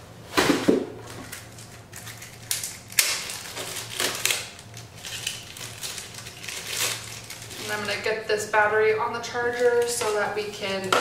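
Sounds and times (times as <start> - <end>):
packaging rustling and crinkling: 1.0 - 8.1.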